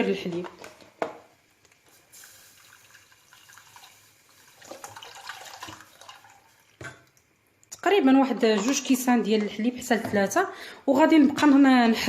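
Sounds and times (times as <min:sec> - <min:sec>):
milk pouring into a pan: 0:02.1 - 0:07.2.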